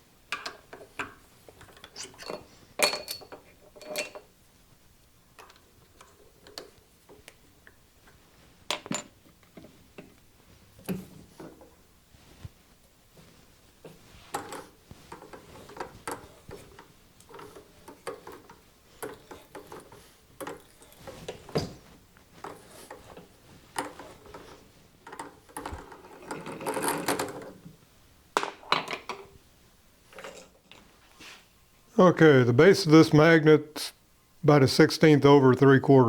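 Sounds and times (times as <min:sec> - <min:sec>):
metal tools clicking and clanking: 0:01.6 - 0:04.3.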